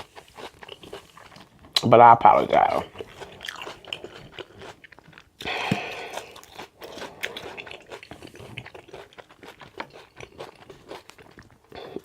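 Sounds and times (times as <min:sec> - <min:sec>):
crunchy chewing: 0:00.0 - 0:01.8, 0:02.6 - 0:12.0.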